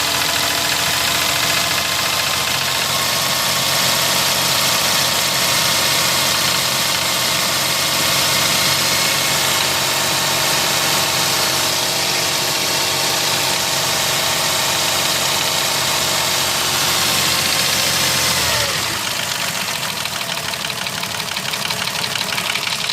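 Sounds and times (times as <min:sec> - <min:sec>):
engine idling with knock: 0:00.0 - 0:22.9
rapid even engine ticking: 0:00.0 - 0:22.9.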